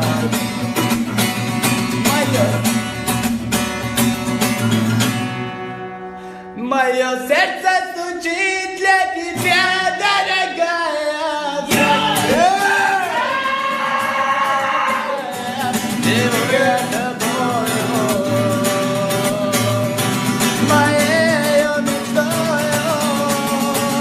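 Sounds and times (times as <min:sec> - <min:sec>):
plucked guitar: 0:00.0 - 0:06.7, 0:09.2 - 0:10.7, 0:11.4 - 0:24.0
person singing: 0:06.5 - 0:24.0.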